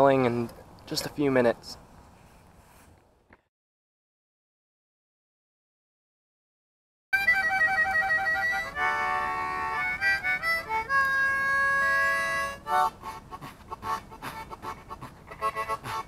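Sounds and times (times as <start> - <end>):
harmonica playing a tune: 7.2 - 16.0.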